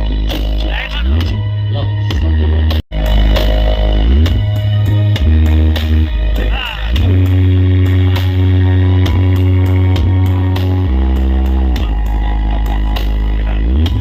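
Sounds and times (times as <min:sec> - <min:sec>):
heavy bass line: 0:00.0 - 0:14.0
loud dance music: 0:00.0 - 0:14.0.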